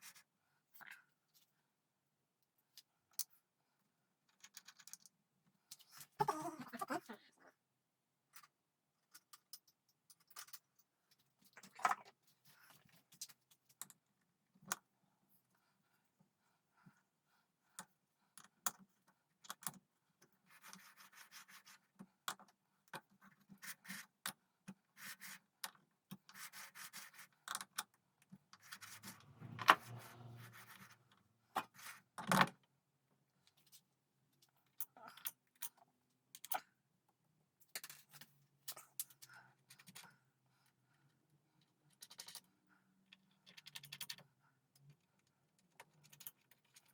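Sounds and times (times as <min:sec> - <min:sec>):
scraping and rubbing strokes: 0:28.6 - 0:32.0.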